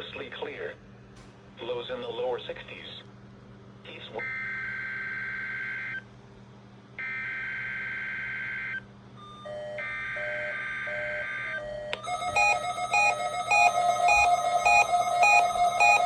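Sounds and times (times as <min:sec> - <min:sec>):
repeating beeps: 0:12.0 - 0:16.0
screechy digital data tones: 0:12.0 - 0:16.0
weather radio alert tone: 0:12.0 - 0:16.0.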